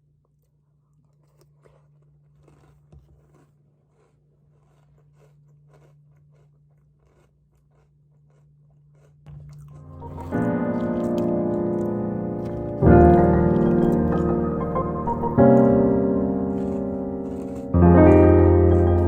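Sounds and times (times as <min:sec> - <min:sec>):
soft crunching: 0:00.0 - 0:19.0
piano music: 0:09.8 - 0:19.0.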